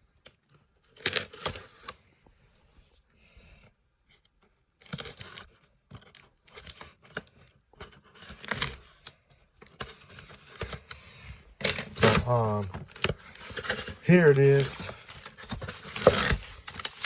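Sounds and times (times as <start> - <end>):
cardboard and tape tearing: 0.9 - 2.0, 7.9 - 8.8, 11.6 - 17.0.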